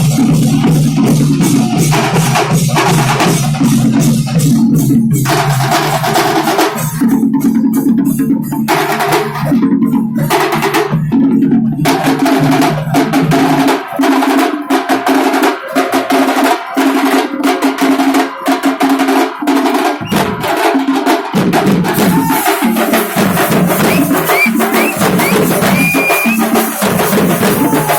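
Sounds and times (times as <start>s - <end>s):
drum ensemble fast beat: 0.0s - 27.9s
rising whistle notes: 23.7s - 26.6s.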